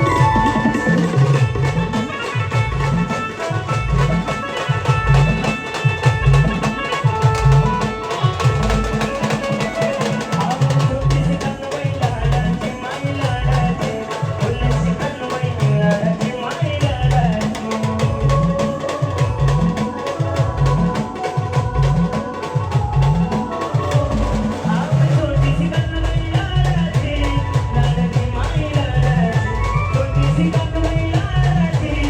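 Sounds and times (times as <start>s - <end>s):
sustained melody line: 0.0s - 3.2s
driving drum beat: 0.0s - 32.0s.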